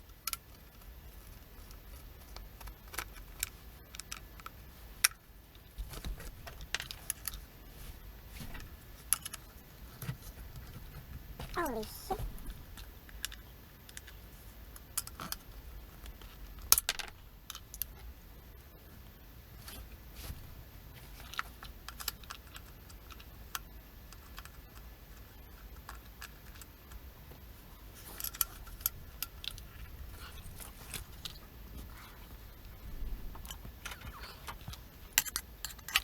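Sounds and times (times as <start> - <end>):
tools and small parts clinking: 28.0 - 29.8, 33.4 - 36.0.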